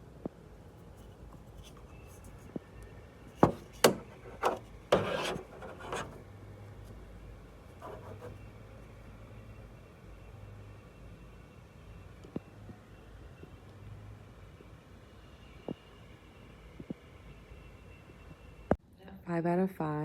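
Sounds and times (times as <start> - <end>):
sharp handling clicks and rubs: 0.8 - 2.6, 3.4 - 6.2, 7.7 - 8.4.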